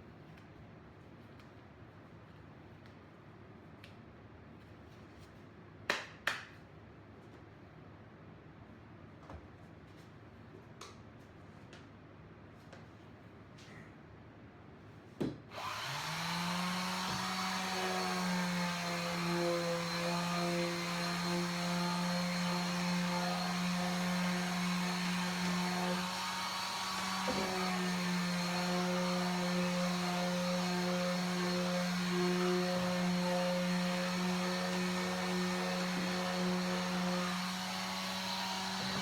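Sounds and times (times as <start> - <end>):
electric sander running: 15.6 - 39.0.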